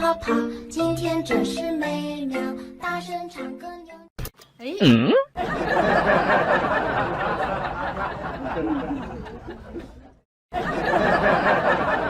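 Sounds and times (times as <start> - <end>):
crowd chattering and laughing: 5.4 - 12.0.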